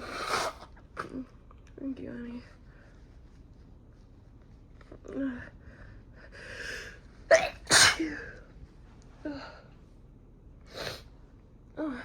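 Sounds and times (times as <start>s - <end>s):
woman sneezing: 7.3s - 8.4s.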